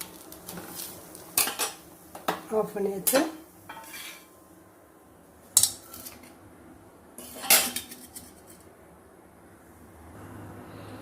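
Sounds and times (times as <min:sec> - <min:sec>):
metal kitchenware clattering: 0:01.4 - 0:01.8, 0:03.0 - 0:04.3, 0:05.6 - 0:06.3, 0:07.2 - 0:08.7.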